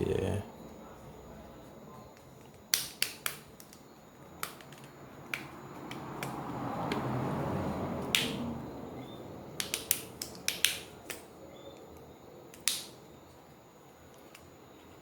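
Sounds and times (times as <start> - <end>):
plastic clips snapping: 2.5 - 3.8, 4.4 - 6.4, 9.6 - 11.3, 12.5 - 13.0.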